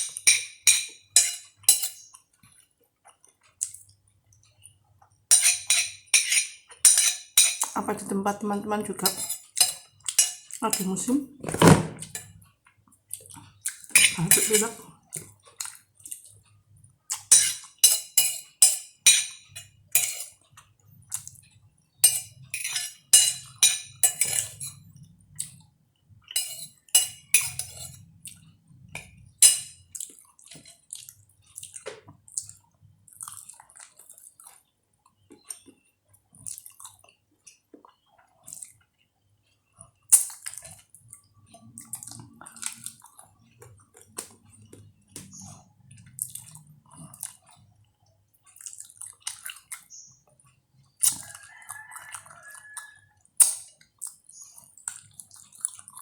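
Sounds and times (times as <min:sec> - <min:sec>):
spoon clinking on plate: 0:00.0 - 0:02.1, 0:05.3 - 0:07.8, 0:09.0 - 0:12.4, 0:13.9 - 0:14.8, 0:17.2 - 0:20.4, 0:22.0 - 0:24.8, 0:26.4 - 0:28.0, 0:29.0 - 0:29.8
slurping and chewing: 0:12.4 - 0:14.0, 0:15.0 - 0:17.8, 0:29.9 - 0:39.0, 0:39.6 - 0:56.0.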